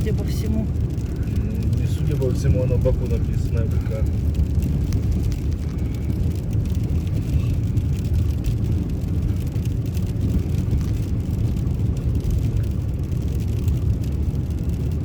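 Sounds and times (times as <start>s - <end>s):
engine and tyre rumble: 0.0s - 15.0s.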